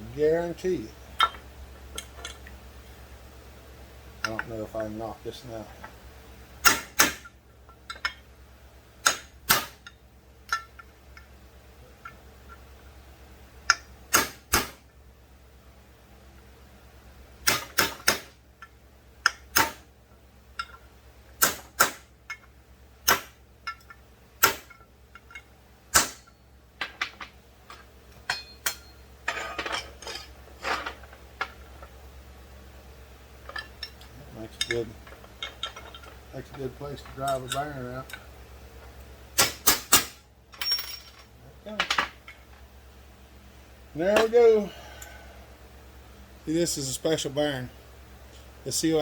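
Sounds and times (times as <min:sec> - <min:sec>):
hammer striking metal punch: 0:06.6 - 0:07.3, 0:09.0 - 0:09.9, 0:13.7 - 0:14.8, 0:17.4 - 0:18.3, 0:21.4 - 0:22.0, 0:25.9 - 0:26.3, 0:28.3 - 0:29.8, 0:39.4 - 0:40.2
metallic clatter: 0:23.6 - 0:31.9, 0:33.4 - 0:38.3.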